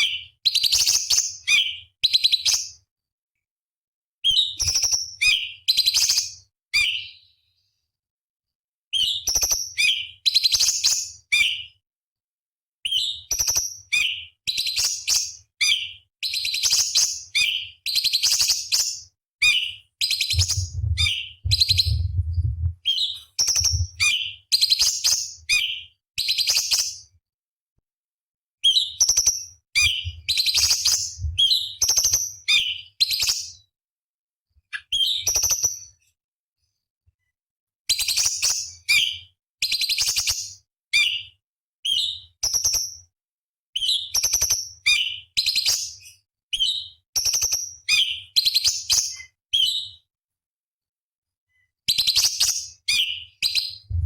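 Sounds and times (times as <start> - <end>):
faint low hum: 20.3 - 22.8, 23.6 - 24.0, 31.2 - 31.5
bird singing high chattering notes: 20.3 - 24.3, 29.8 - 31.8.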